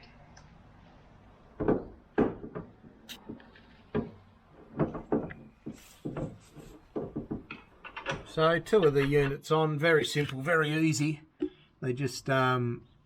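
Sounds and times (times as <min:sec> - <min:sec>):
hardware knocks and clunks: 0:01.6 - 0:09.4.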